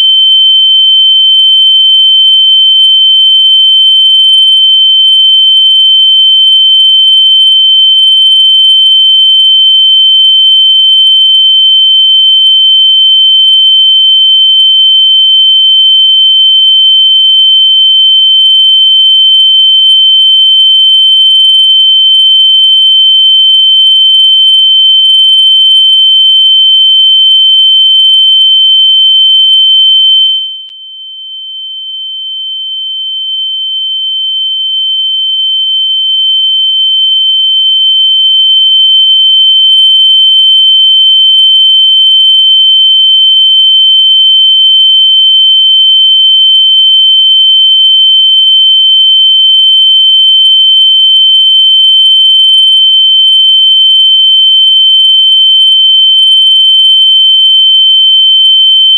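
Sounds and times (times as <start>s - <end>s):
high-pitched electronic sine tone: 28.0s - 31.1s.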